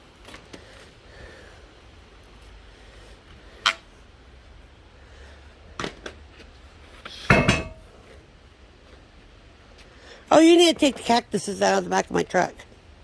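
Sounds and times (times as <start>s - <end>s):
sharp knocks and clanks: 7.3s - 7.9s
metallic ring: 7.3s - 8.0s.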